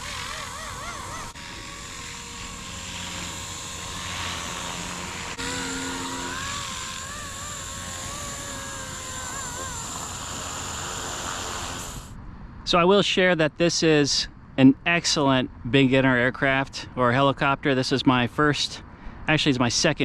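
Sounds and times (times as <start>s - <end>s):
rc helicopter rotor whine: 0.0s - 12.2s.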